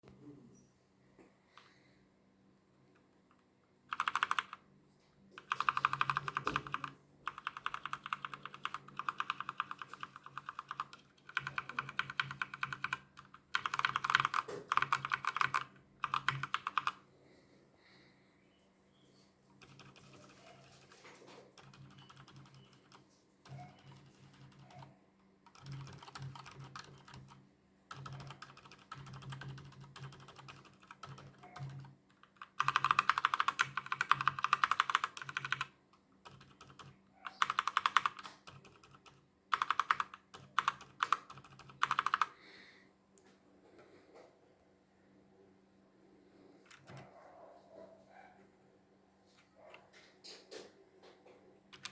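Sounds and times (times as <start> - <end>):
fast typing on mechanical keyboard: 3.9 - 4.6, 5.4 - 17.0, 19.6 - 24.9, 25.5 - 42.4.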